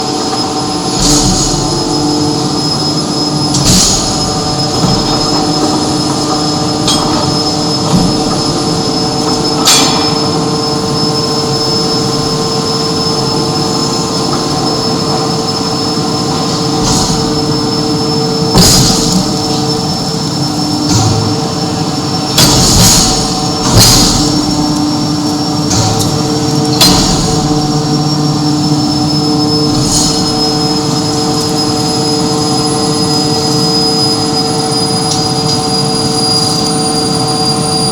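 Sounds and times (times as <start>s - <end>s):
machine whine: 0.0s - 37.9s
metal being struck: 9.4s - 10.7s, 22.4s - 28.2s.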